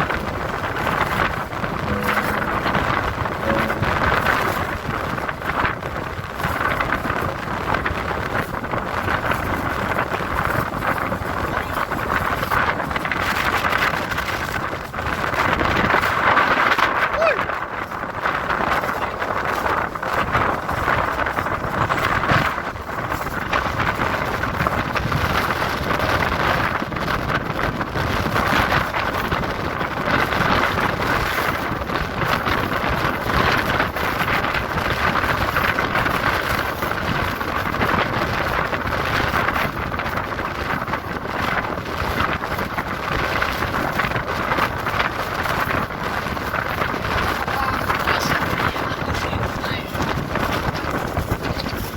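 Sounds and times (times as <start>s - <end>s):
sea waves surf: 0.0s - 4.9s
wind on microphone: 0.0s - 51.9s.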